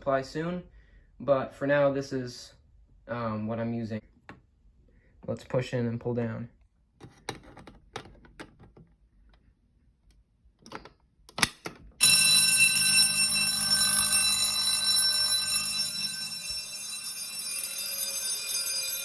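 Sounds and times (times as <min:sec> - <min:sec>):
fire alarm bells ringing: 0:12.0 - 0:19.0.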